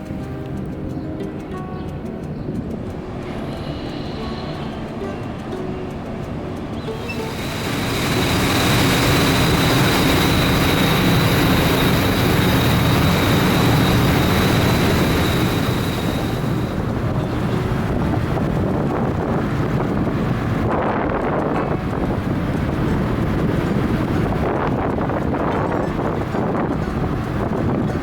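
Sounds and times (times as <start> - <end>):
wind on microphone: 0.0 - 28.0
boat engine running: 2.6 - 28.0
water rushing: 3.0 - 20.7
thin high whine: 3.2 - 6.0, 6.8 - 28.0.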